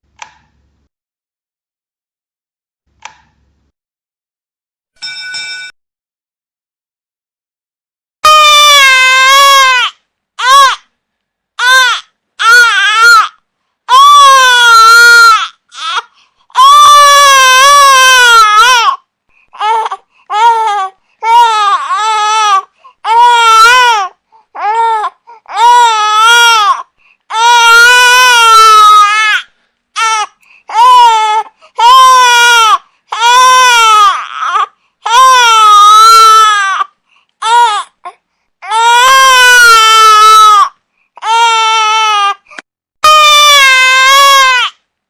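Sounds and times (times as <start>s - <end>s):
infant crying: 8.2s - 10.8s, 11.6s - 44.8s.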